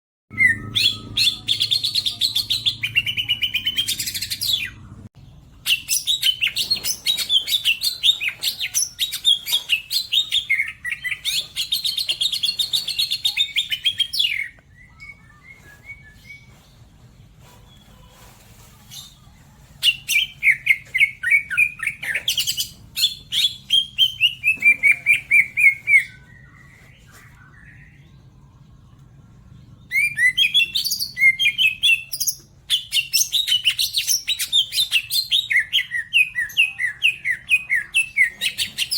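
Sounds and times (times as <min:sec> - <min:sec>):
bird singing rapid notes: 0:00.3 - 0:16.6.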